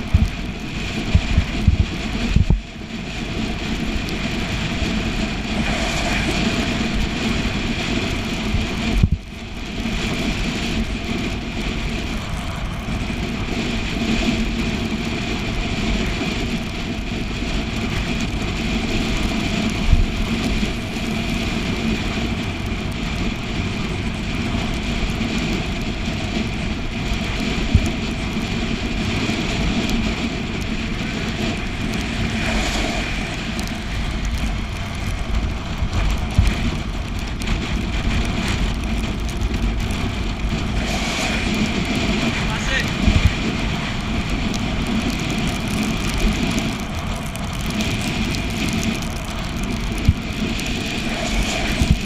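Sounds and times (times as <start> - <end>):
road noise: 0.0 - 52.0
rushing wind: 0.0 - 52.0
low buffeting thumps: 4.5 - 9.4.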